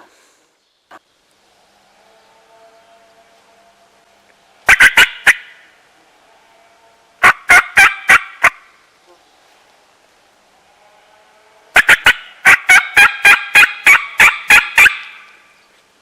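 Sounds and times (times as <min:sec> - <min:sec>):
turkey gobbling: 0:04.7 - 0:05.5, 0:07.2 - 0:08.7, 0:11.8 - 0:15.3.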